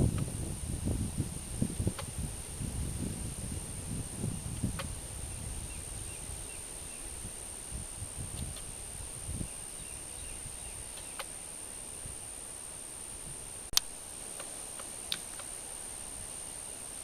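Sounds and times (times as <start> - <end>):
wind rumble on microphone: 0.0 - 11.2
sharp clicks: 13.7 - 15.5.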